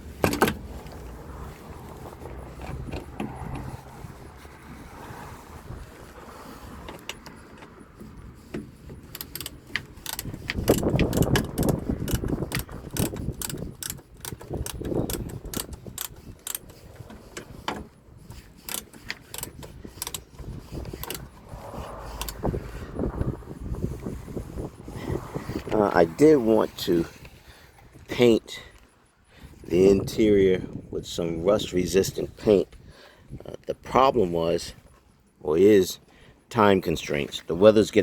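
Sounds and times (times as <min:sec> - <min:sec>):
handling clunks: 0:00.0 - 0:01.2, 0:01.8 - 0:04.1, 0:06.7 - 0:24.9
ratchet wrench clicking: 0:08.9 - 0:17.6, 0:18.3 - 0:22.8.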